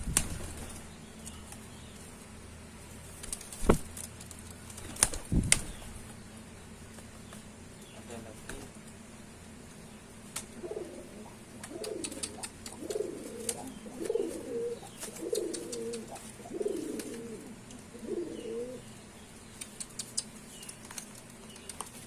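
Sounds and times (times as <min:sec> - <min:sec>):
pigeon cooing: 0:10.6 - 0:18.9
pigeon clicks: 0:11.6 - 0:14.4, 0:15.0 - 0:17.8, 0:19.5 - 0:22.0.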